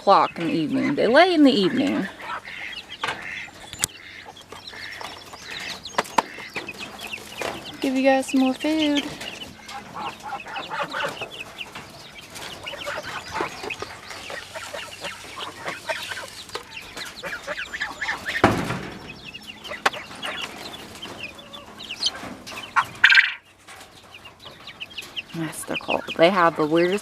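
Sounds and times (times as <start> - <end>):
birds chirping and clucking: 0.0 - 27.0
quail crowing call: 9.2 - 11.5, 19.5 - 23.4.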